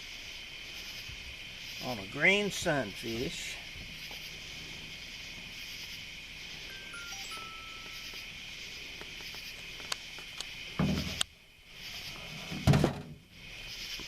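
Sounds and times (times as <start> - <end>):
insects chirring: 0.0 - 14.0
rustling thumps: 10.8 - 11.2, 12.3 - 13.3.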